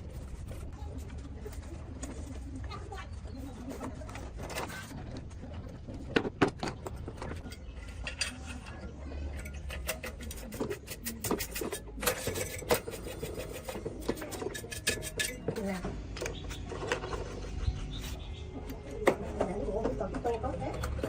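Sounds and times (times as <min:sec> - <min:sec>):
small parts clicking and knocking: 0:05.9 - 0:17.4.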